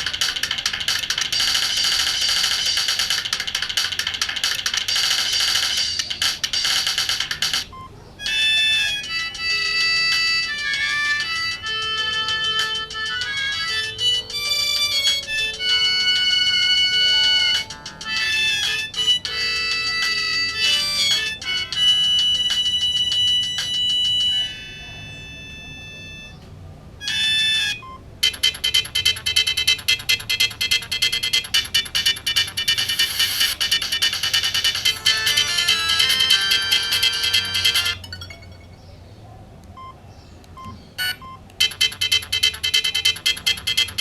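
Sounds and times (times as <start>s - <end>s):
keypad beeps: 0.0s - 8.4s, 9.4s - 38.8s, 39.7s - 44.0s
mobile phone ringtone: 0.0s - 38.8s, 40.6s - 44.0s.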